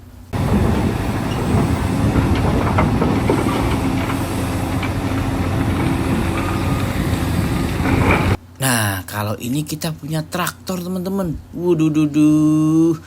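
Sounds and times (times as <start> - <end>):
loud mechanical rumble: 0.3 - 8.4.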